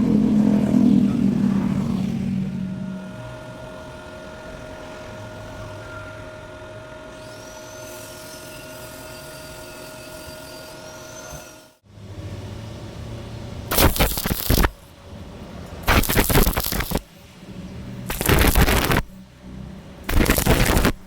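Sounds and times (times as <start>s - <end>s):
electrical hum: 13.4s - 19.3s, 20.0s - 21.0s
electric arc welding crackle: 13.7s - 14.9s, 15.8s - 17.1s, 18.1s - 19.2s, 20.1s - 21.0s.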